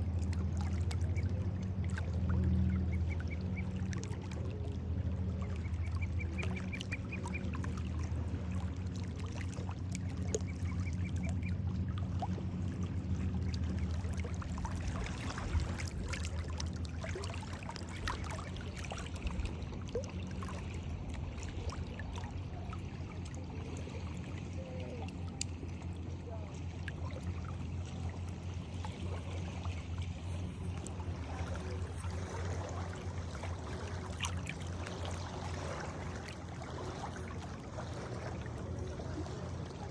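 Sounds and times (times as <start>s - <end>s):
low steady hum: 0.0s - 39.9s
water splashing and lapping: 0.0s - 39.9s
birds calling: 5.4s - 8.0s.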